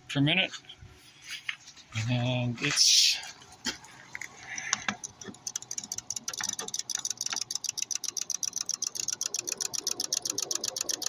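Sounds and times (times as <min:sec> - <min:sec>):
rapid mechanical ticking: 0:04.5 - 0:11.0.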